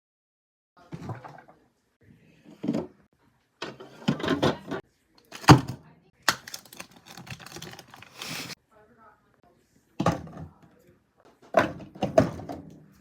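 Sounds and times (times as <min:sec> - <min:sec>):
items knocking: 0:03.6 - 0:08.6
packaging rustling: 0:06.3 - 0:08.6.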